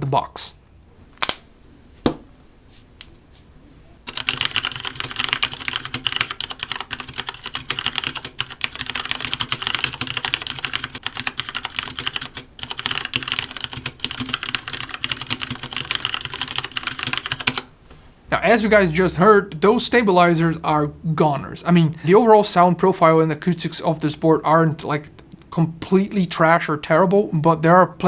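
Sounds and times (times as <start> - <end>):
fast typing on mechanical keyboard: 4.1 - 17.7.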